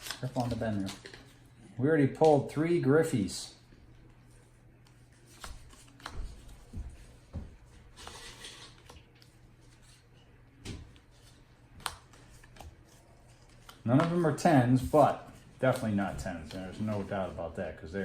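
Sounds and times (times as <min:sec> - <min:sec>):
cards clicking and tapping: 0:04.8 - 0:06.8, 0:11.8 - 0:14.2.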